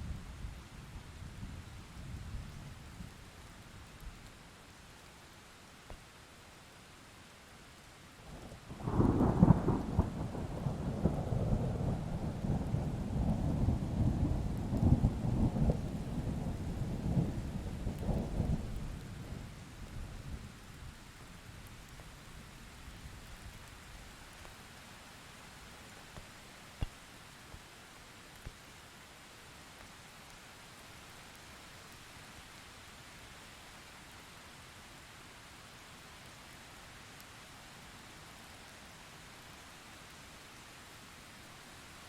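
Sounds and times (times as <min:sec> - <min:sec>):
steady rain hiss: 0:00.0 - 0:42.0
thunder rumbling: 0:08.8 - 0:19.5.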